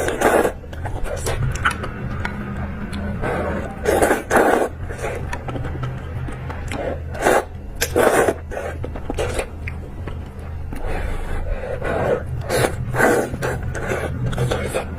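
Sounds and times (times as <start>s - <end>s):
chewing and mouth sounds: 0.0s - 11.3s, 12.0s - 14.9s
steady low hum: 0.0s - 14.9s.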